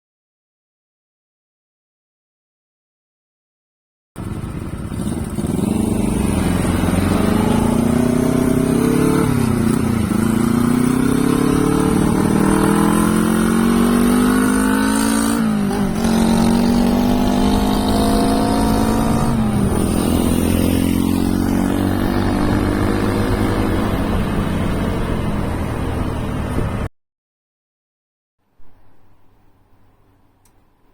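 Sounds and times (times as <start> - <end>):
motorcycle engine accelerating: 4.2 - 26.9.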